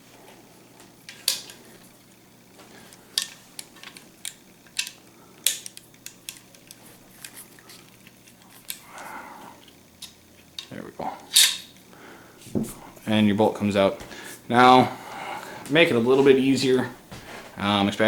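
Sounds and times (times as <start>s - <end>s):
rifle bolt clicking and clacking: 3.2s - 6.8s, 11.3s - 11.6s.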